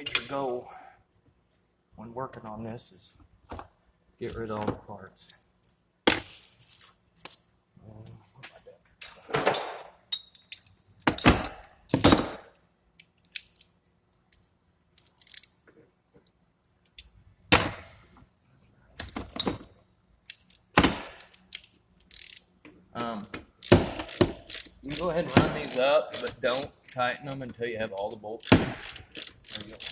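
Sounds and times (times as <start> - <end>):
metal tools clinking: 5.1 - 7.4, 9.0 - 12.6, 19.0 - 22.4.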